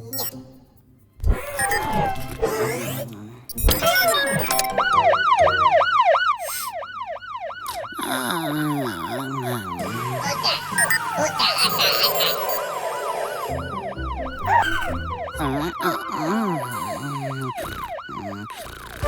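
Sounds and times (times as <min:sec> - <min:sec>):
sliding cartoon sound effects: 0:01.3 - 0:03.0, 0:07.7 - 0:19.0
cartoon siren wailing: 0:01.5 - 0:02.6, 0:03.6 - 0:19.0.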